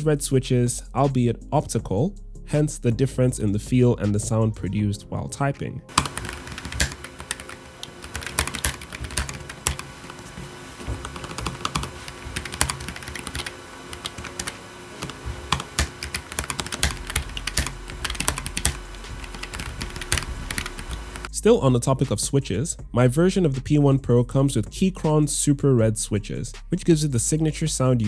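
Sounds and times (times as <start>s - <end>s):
mechanical keyboard typing: 5.9s - 21.3s.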